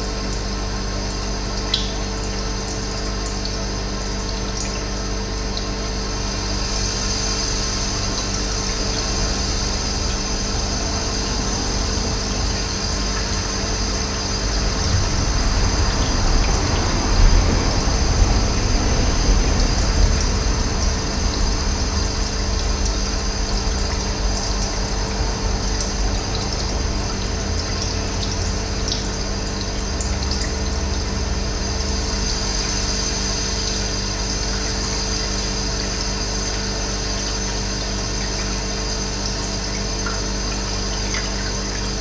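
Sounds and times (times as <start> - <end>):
running water flowing: 0.1 - 42.0.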